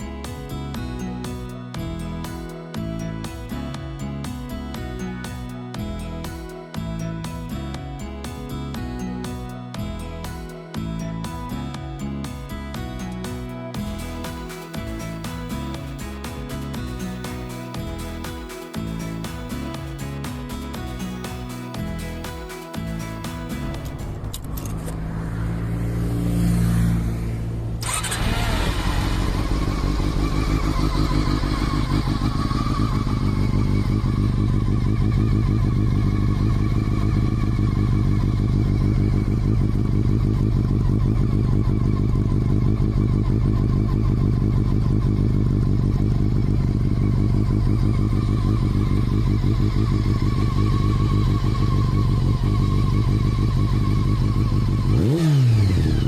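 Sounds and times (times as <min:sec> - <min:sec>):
motorcycle engine idling: 0:27.4 - 0:56.0.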